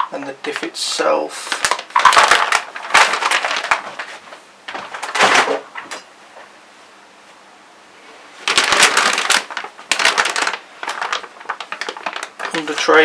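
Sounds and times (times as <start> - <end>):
plastic bags rustling: 0.5 - 6.1, 8.3 - 13.0.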